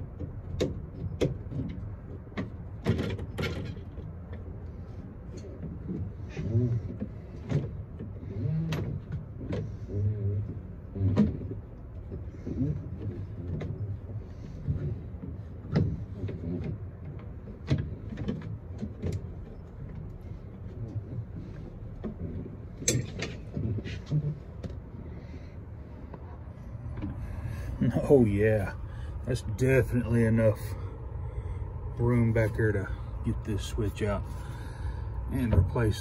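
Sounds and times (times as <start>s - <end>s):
clicks and knocks on plastic dashboard: 0.0s - 4.5s
low handling rumble: 0.0s - 36.0s.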